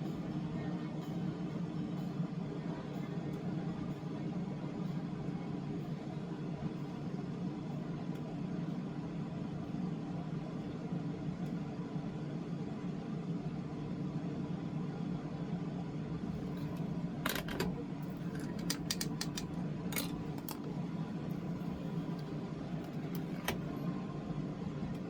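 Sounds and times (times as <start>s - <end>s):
low background hum: 0.0s - 25.0s.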